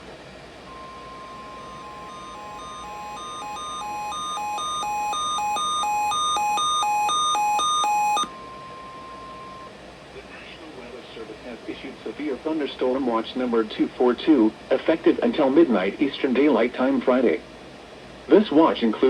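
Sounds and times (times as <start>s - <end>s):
steady single-pitch alarm tone: 0.7s - 9.8s
two-pitch alternating alarm: 0.7s - 9.8s.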